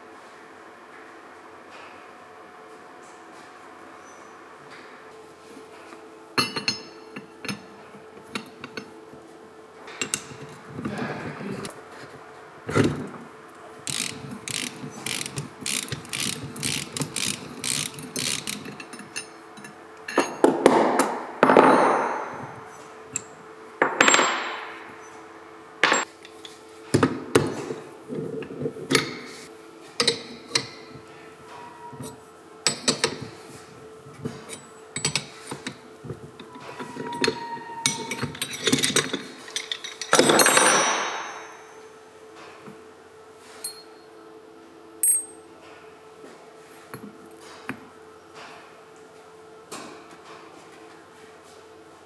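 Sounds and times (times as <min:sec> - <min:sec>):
hand tools clinking on metal: 0:06.4 - 0:09.0, 0:10.0 - 0:11.1, 0:13.9 - 0:20.5, 0:34.4 - 0:41.7, 0:45.0 - 0:45.4.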